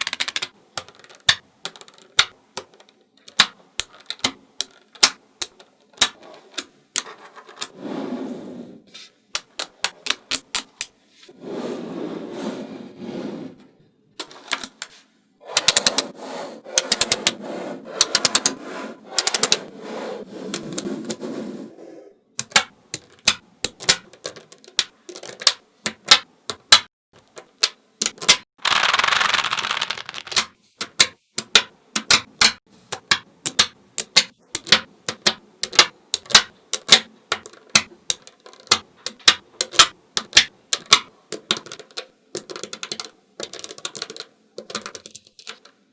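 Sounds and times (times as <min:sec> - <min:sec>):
magnetic balls clicking: 0:00.0 - 0:07.7, 0:22.4 - 0:45.8
balls rattling and rolling: 0:00.0 - 0:07.8, 0:14.2 - 0:19.8, 0:22.4 - 0:45.9.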